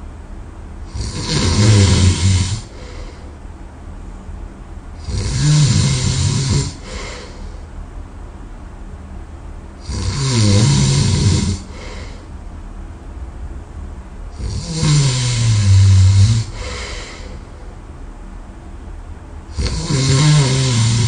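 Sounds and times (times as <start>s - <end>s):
person snoring loudly: 0.9s - 3.2s, 5.0s - 7.4s, 9.8s - 12.2s, 14.4s - 17.4s, 19.5s - 21.0s
soft breathing: 1.9s - 3.4s, 6.3s - 7.7s, 11.4s - 12.4s, 15.1s - 17.8s.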